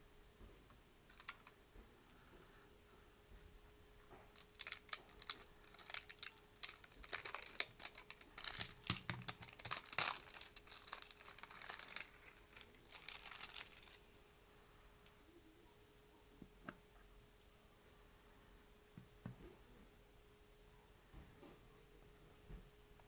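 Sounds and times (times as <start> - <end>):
faint steady hum: 0.0 - 23.0
crinkling and small clicks: 0.7 - 2.4, 3.4 - 14.0.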